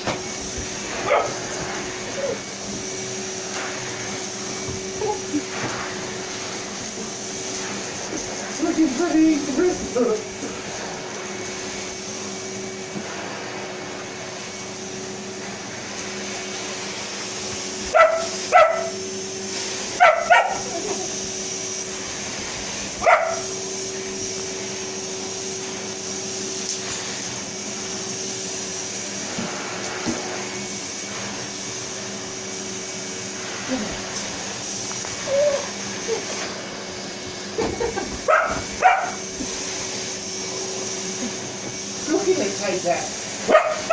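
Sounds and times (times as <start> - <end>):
vacuum cleaner running: 0.0 - 43.9
dog barking: 1.0 - 1.4, 17.9 - 19.0, 20.0 - 20.8, 23.0 - 23.5, 38.3 - 39.2, 43.5 - 43.9.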